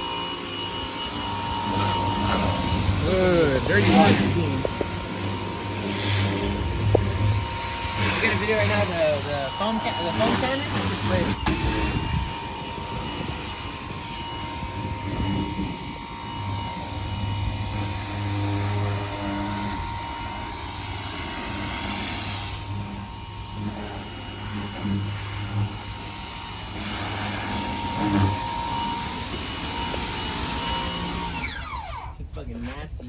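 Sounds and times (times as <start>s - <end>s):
low motor hum: 0.0s - 33.0s
pressure washer whine: 0.0s - 33.0s
water spraying: 1.2s - 12.1s, 20.9s - 30.8s.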